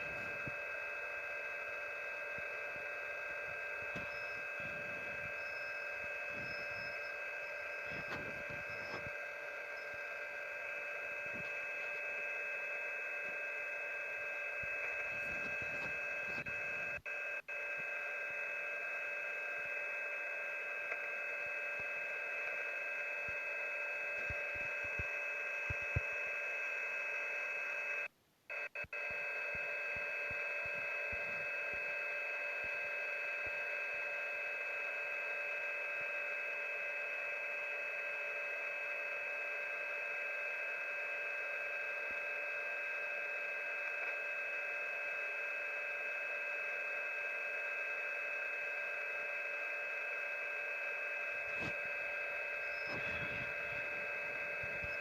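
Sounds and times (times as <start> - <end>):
radio static: 0.0 - 55.0
radio tones: 0.0 - 55.0.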